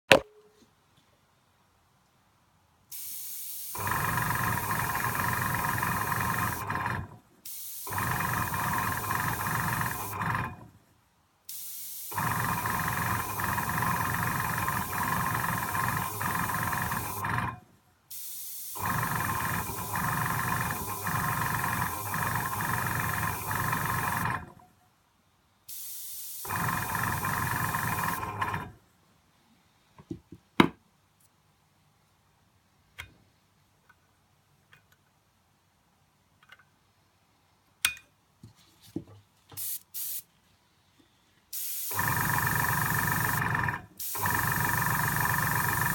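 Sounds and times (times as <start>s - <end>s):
short air hiss: 2.9s - 3.8s, 7.4s - 8.0s, 11.5s - 12.2s, 18.1s - 18.8s, 25.7s - 26.5s, 39.6s - 40.3s, 41.5s - 42.0s, 44.0s - 44.3s
airbrush compressor humming: 3.6s - 7.0s, 7.8s - 10.6s, 12.0s - 17.6s, 18.6s - 24.5s, 26.4s - 28.7s, 41.6s - 45.9s.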